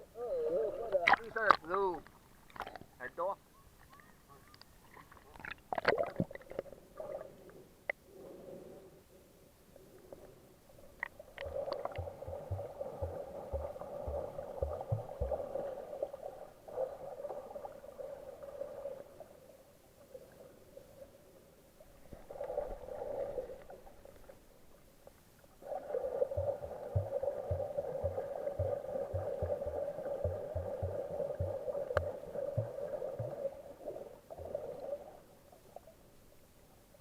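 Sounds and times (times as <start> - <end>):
underwater water rushing and gurgling: 10.1 - 36.0
soft low thumps: 11.5 - 15.6, 26.3 - 33.5.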